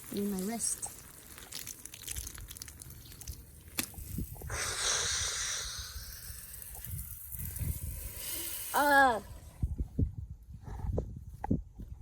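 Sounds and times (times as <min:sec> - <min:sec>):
water spraying from hose: 0:00.0 - 0:09.4.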